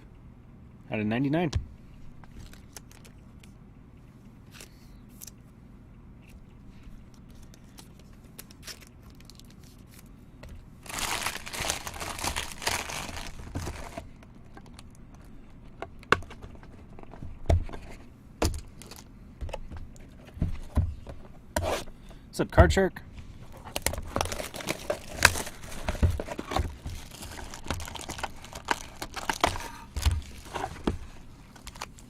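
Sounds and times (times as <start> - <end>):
plastic wrapper crinkling: 2.2 - 3.5, 7.3 - 10.1, 10.8 - 15.0, 23.6 - 32.0.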